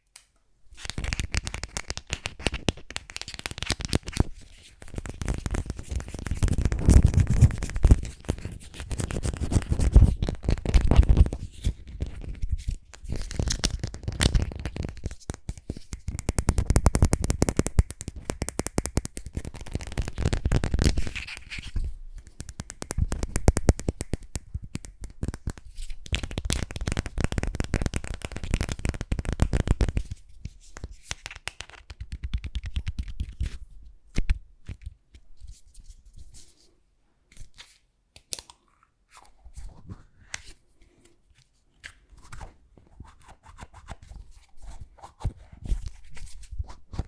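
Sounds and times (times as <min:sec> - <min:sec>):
crackly tapping and scratching: 0:00.8 - 0:33.6.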